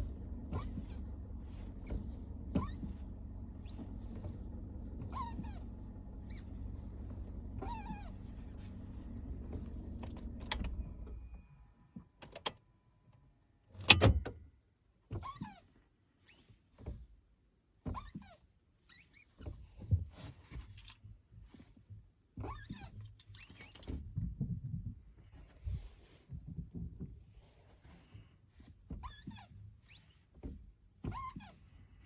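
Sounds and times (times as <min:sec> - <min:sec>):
clutch squeaking: 0:00.0 - 0:11.6, 0:12.2 - 0:12.6, 0:13.7 - 0:14.4
low rumble: 0:00.0 - 0:11.8.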